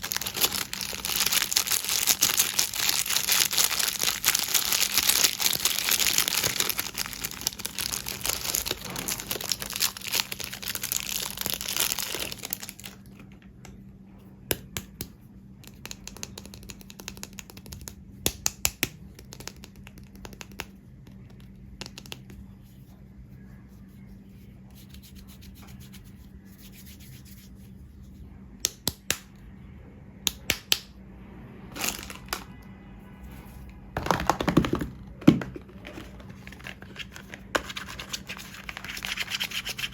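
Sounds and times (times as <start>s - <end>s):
wrapper crinkling and tearing: 0.0s - 13.1s, 31.8s - 32.4s, 35.8s - 39.9s.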